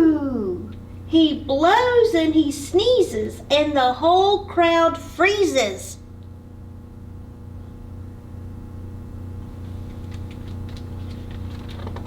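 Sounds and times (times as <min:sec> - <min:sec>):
steady low hum: 0:00.0 - 0:12.0
faint clicks and taps: 0:09.9 - 0:12.0.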